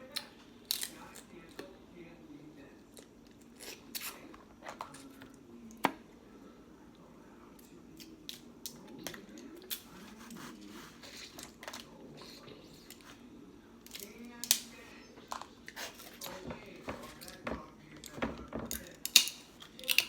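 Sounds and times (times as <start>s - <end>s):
crab shells cracking: 13.9s - 14.7s, 18.7s - 20.0s.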